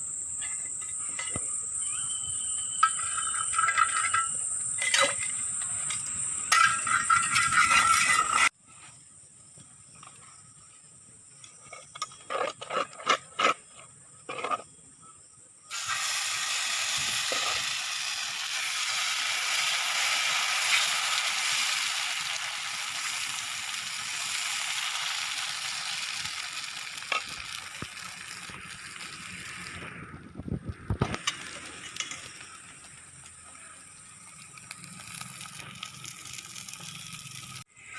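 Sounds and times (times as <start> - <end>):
batter sizzling on hot griddle: 15.7 - 37.7.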